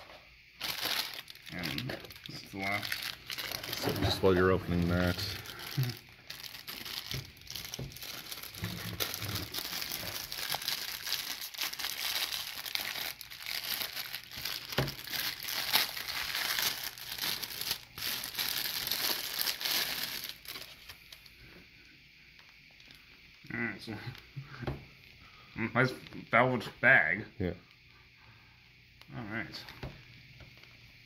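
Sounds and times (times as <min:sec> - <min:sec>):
packaging crinkling and rustling: 0:00.0 - 0:21.4.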